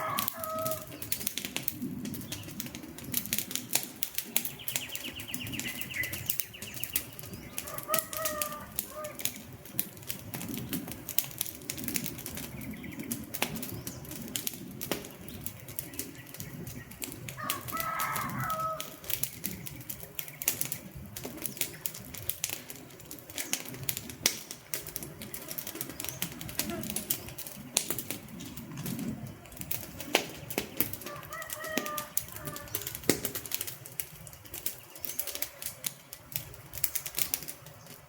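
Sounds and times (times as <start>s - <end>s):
wood fire crackling and popping: 0.0s - 38.0s
bird call: 4.4s - 9.4s.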